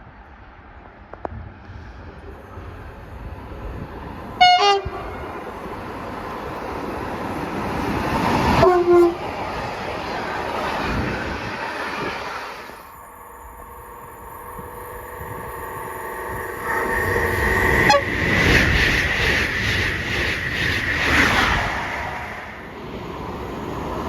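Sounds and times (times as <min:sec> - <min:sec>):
train rumbling past: 0:00.0 - 0:24.0
train horn blasts: 0:04.4 - 0:05.3, 0:08.6 - 0:09.3, 0:17.8 - 0:18.2.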